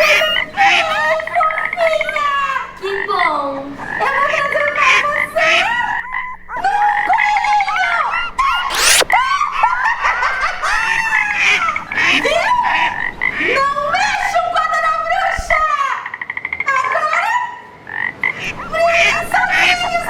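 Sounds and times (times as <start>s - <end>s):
high-pitched voices squealing: 8.7s - 9.1s
sharp rising whoosh: 8.7s - 9.1s.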